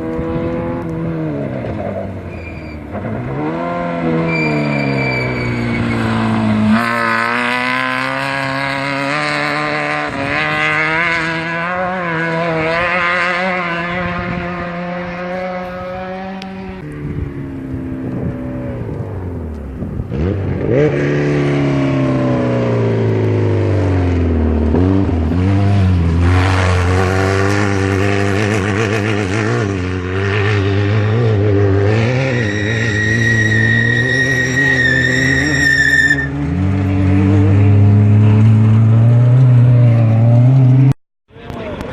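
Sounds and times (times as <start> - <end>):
race vehicle engines revving: 0.0 - 41.9.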